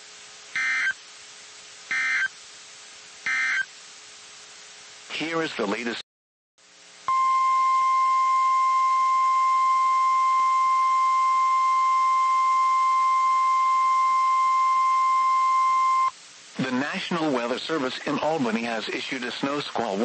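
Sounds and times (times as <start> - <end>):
steady warning alarm tone: 0.6 - 1.0, 1.9 - 2.3, 3.3 - 3.7.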